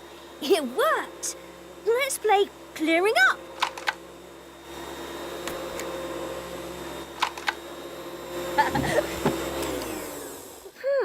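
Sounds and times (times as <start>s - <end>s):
electric motor whirring hum: 0.0s - 10.8s
clicks and clatters: 3.6s - 4.0s.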